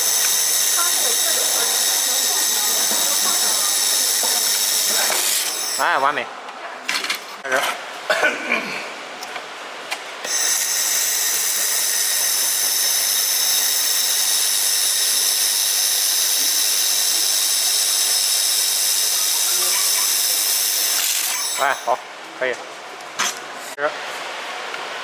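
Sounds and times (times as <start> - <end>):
laser welder hissing and whistling: 0.0 - 6.0, 10.3 - 22.0.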